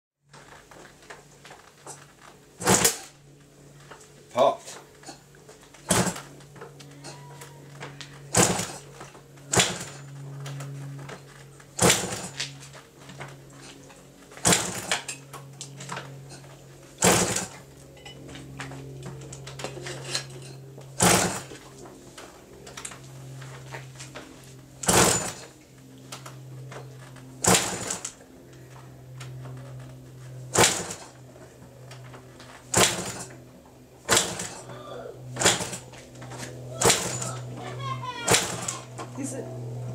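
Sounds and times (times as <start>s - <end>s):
low hum: 0.2s - 39.9s
motorcycle kick-start clacking: 24.8s - 25.5s, 32.7s - 33.3s, 34.1s - 34.6s.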